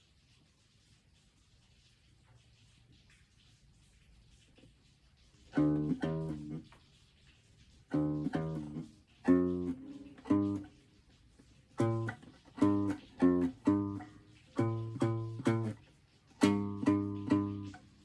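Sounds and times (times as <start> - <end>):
guitar chords strummed: 7.9 - 10.7, 11.8 - 15.8, 16.4 - 18.0.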